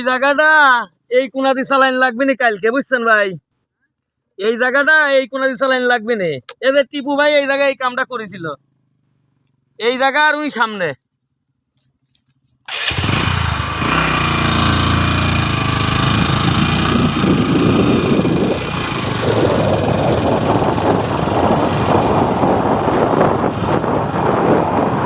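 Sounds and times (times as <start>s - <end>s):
small engine running: 12.7s - 24.6s.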